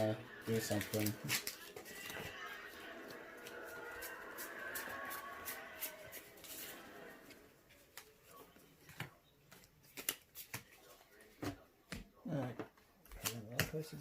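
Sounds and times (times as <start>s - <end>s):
cards rustling: 0.4s - 11.4s
cards clicking: 8.9s - 10.7s.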